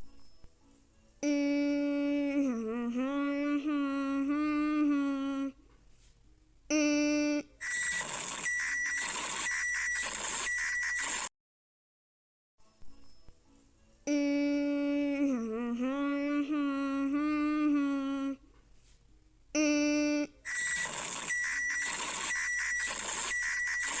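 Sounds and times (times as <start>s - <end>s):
static-like noise: 7.7s - 11.3s, 20.5s - 24.0s
buzzy wavering alert tone: 19.9s - 24.0s.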